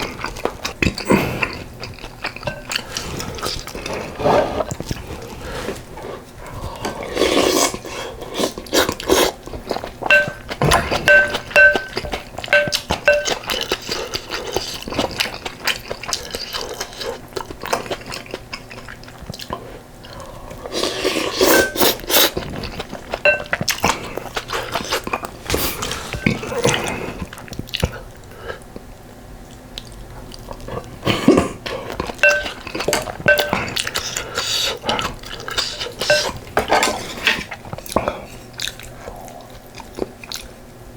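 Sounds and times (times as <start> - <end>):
person chewing: 0.0 - 5.6, 6.6 - 28.1, 29.5 - 40.6
spoon clinking against bowl: 10.1 - 13.4, 23.2 - 23.6, 32.2 - 32.6, 33.3 - 33.6, 36.0 - 36.3.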